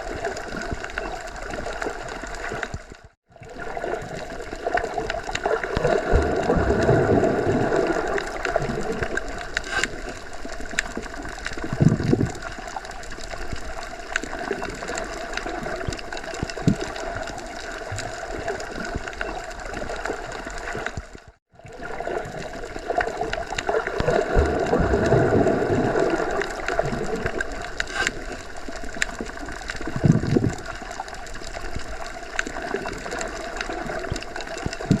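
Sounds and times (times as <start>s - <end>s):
underwater water wash: 0.0s - 35.0s.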